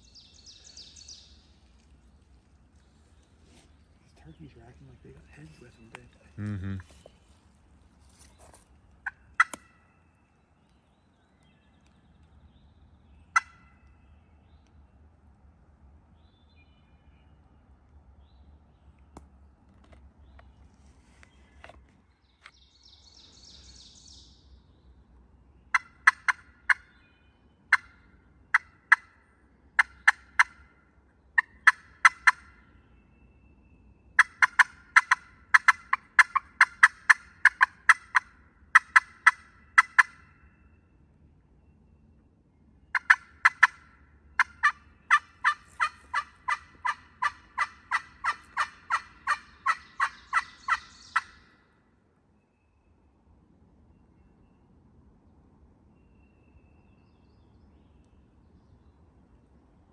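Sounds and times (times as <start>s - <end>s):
turkey yelping: 9.0s - 9.8s, 13.4s - 13.8s, 25.7s - 26.9s, 27.7s - 29.2s, 29.8s - 30.7s, 31.4s - 32.6s, 34.2s - 40.4s, 42.9s - 51.6s.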